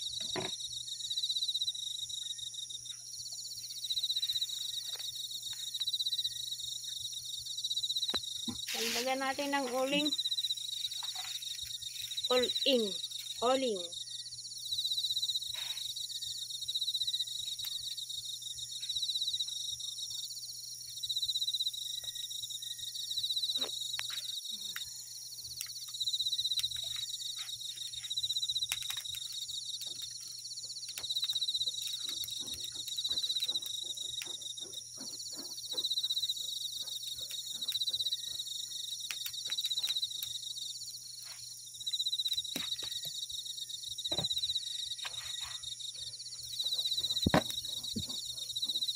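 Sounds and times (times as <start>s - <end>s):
crickets chirring: 0.0s - 48.9s.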